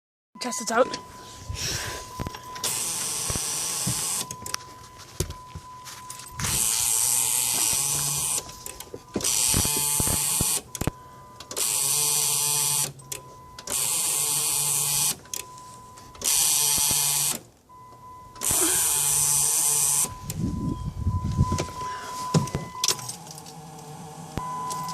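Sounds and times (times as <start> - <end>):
steady high tone: 0.4 - 9.1, 20.0 - 23.2.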